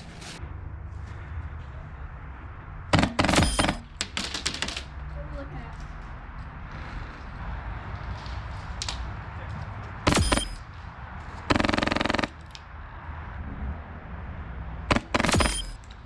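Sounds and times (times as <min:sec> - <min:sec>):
airsoft gun bursts: 0:10.1 - 0:10.6, 0:11.5 - 0:12.4.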